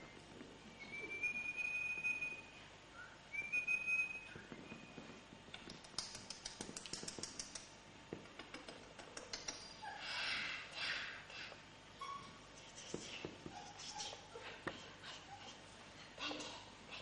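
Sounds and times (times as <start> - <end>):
puppy whining: 0.8 - 5.1, 9.8 - 12.5, 13.2 - 15.6
small quick clicks: 5.5 - 7.7.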